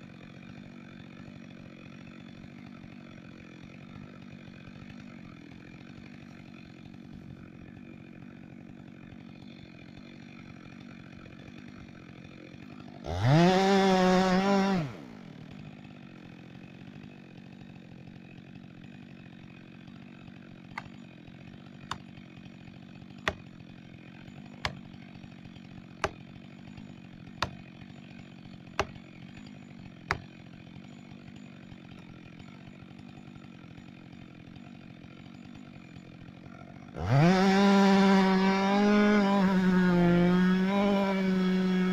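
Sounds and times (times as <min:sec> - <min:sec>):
chainsaw idling and revving: 0:00.0 - 0:41.9
sharp knocks: 0:28.8 - 0:29.0.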